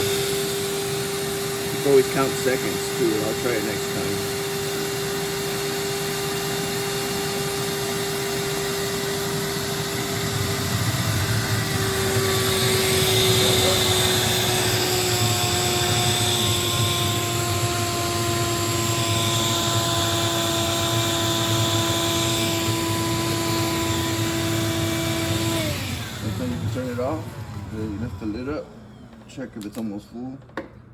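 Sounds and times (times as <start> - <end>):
shop vacuum motor whine: 0.0 - 30.9
higher whine: 8.5 - 21.0.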